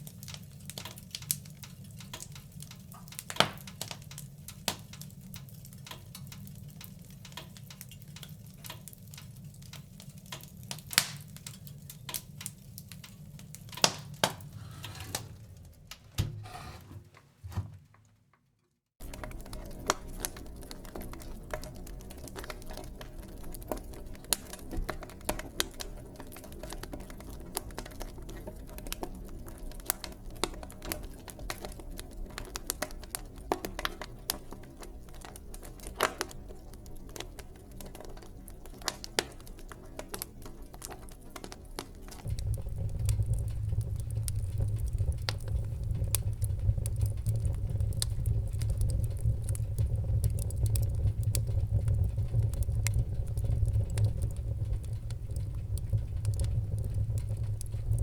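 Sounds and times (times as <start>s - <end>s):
wood fire crackling and popping: 0.0s - 16.2s, 19.0s - 58.0s
loud low rumble: 42.3s - 58.0s.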